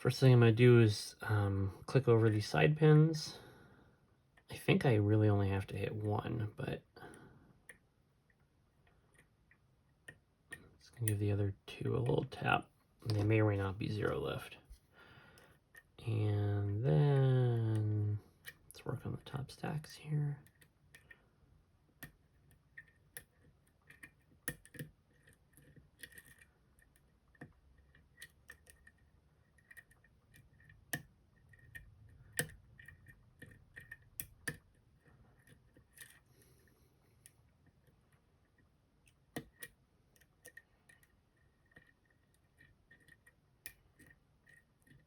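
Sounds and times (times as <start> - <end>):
lock-picking metal clicks: 22.0 - 36.3, 38.5 - 45.0.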